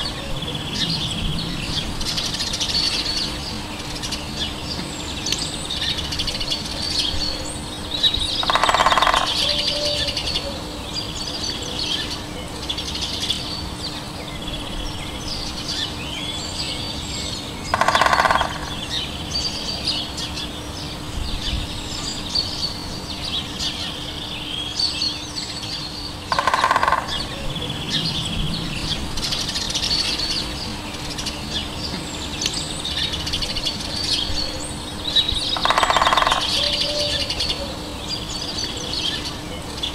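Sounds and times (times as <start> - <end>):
faint steady hum: 0.0 - 39.9
songbirds chirping: 0.0 - 39.9
woodpecker drumming on wood: 8.3 - 9.6, 17.7 - 18.9, 26.3 - 27.3, 35.5 - 36.6.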